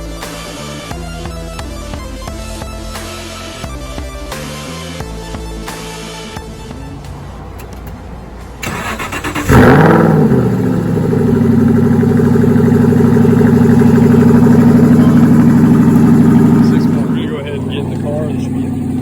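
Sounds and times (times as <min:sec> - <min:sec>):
background music: 0:00.0 - 0:09.5
car engine revving and idling: 0:06.6 - 0:19.0
car starter cranking: 0:08.6 - 0:19.0.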